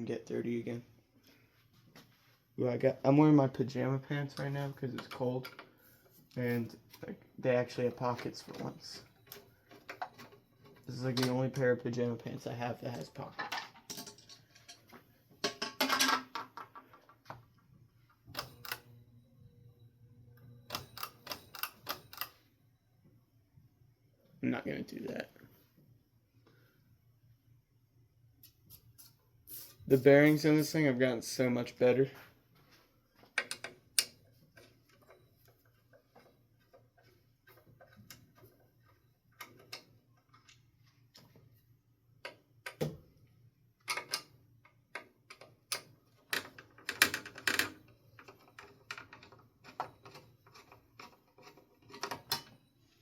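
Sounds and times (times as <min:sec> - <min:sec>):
faint low hum: 0:17.0 - 0:53.0.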